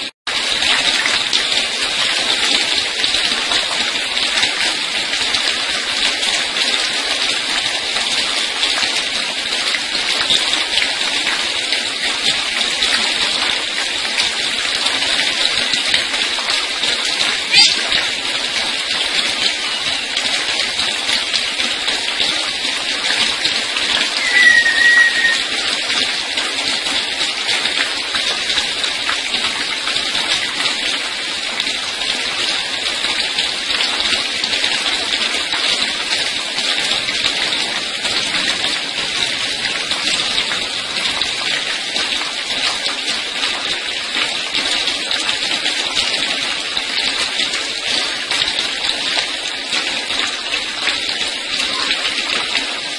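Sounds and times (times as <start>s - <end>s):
bird chirp: 17.5s - 17.9s, 24.2s - 25.6s
hiss of falling water spray: 23.2s - 27.9s.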